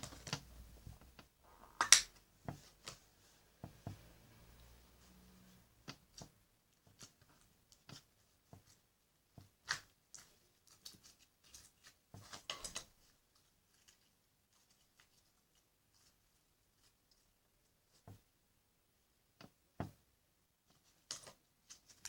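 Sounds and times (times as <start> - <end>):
slime squishing clicks and pops: 1.7 - 2.1.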